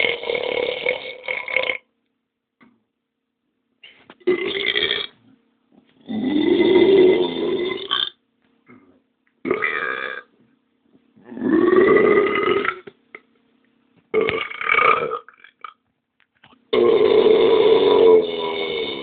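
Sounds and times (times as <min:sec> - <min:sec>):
person belching: 0:00.0 - 0:01.9, 0:04.2 - 0:05.2, 0:06.0 - 0:08.2, 0:09.4 - 0:10.3, 0:11.2 - 0:13.0, 0:14.1 - 0:15.8, 0:16.7 - 0:19.0.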